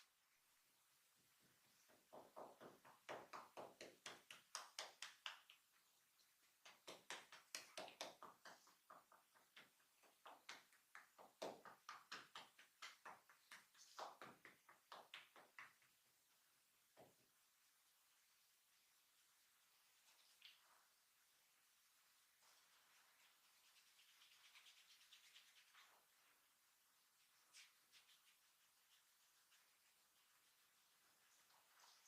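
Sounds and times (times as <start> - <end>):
hand tapping on head: 2.1 - 5.6.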